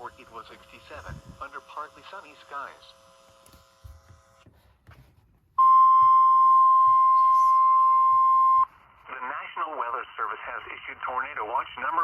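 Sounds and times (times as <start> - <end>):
high single-pitch alarm tone: 5.6 - 8.7.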